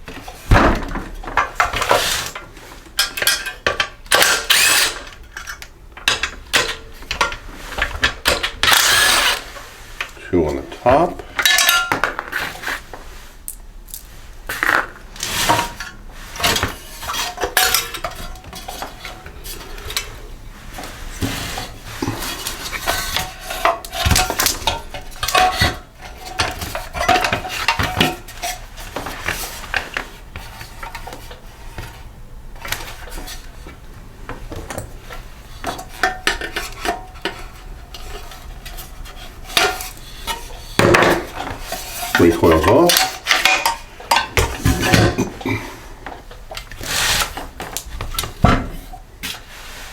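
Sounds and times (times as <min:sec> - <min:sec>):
metal tools and bolts clinking: 0:01.6 - 0:09.4, 0:11.3 - 0:12.2, 0:15.4 - 0:20.2, 0:21.5 - 0:30.0, 0:35.6 - 0:45.4.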